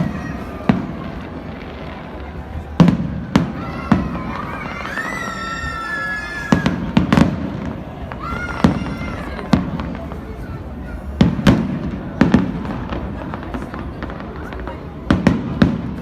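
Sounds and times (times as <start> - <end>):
firework bangs: 0.0 - 16.0
firework whistle: 2.8 - 9.8.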